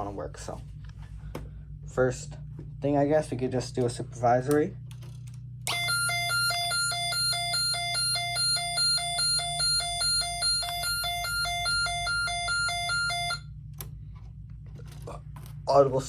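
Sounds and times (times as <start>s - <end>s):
pulsing electronic alarm tone: 5.7s - 13.5s.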